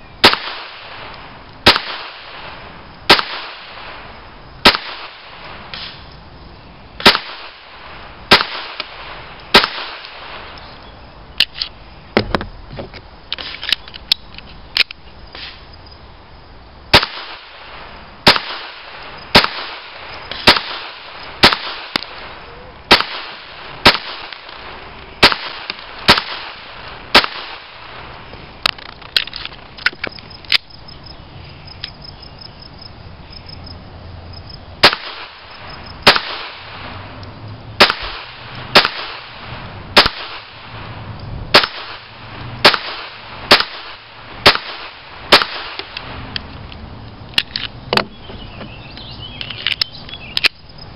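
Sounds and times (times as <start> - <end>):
pistol shots: 0.2 - 4.0, 4.6 - 6.0, 7.0 - 10.4, 16.9 - 22.3, 22.9 - 28.0, 34.8 - 35.4, 36.0 - 36.8, 37.8 - 39.4, 40.0 - 40.7, 41.5 - 46.1.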